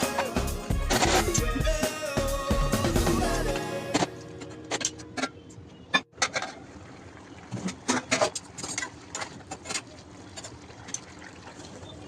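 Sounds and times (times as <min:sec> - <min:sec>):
kitchen utensils clicking and knocking: 0:04.6 - 0:06.6.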